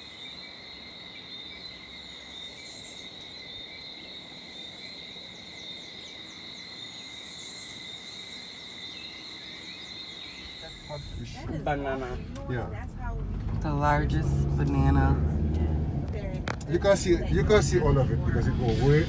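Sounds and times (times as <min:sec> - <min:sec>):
insect chorus drone: 0:00.0 - 0:13.5.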